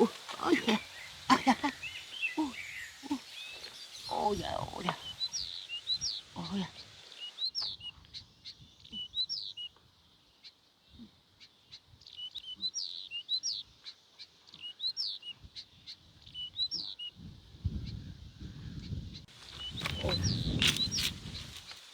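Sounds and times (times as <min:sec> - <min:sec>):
small bird singing whistled notes: 0:00.7 - 0:09.8, 0:12.1 - 0:13.7, 0:14.5 - 0:18.1, 0:18.8 - 0:21.6.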